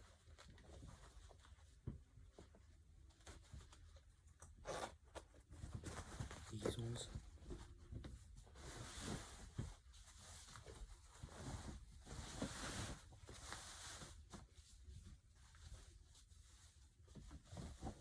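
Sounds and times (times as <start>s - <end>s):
rustling of clothes and shoes: 0.0s - 18.0s.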